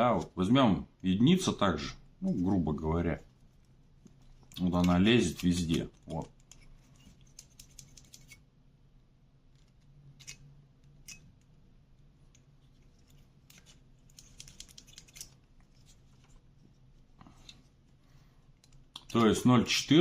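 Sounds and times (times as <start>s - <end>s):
faint metallic clicks and scrapes: 3.3s - 8.5s, 9.5s - 19.4s.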